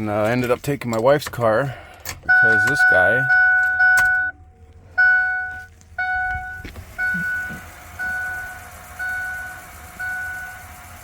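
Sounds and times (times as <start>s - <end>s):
car warning chime: 2.3s - 10.8s.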